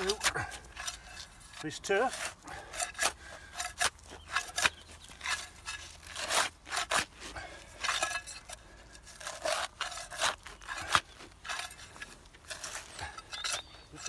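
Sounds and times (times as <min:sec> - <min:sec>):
blade scraping and tearing turf: 0:00.0 - 0:14.0.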